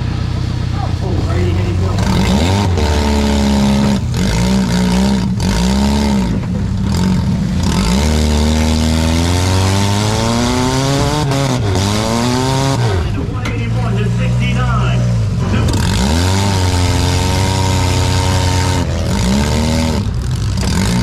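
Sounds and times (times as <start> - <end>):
car engine revving: 0.0 - 21.0
cars colliding bangs: 15.1 - 21.0.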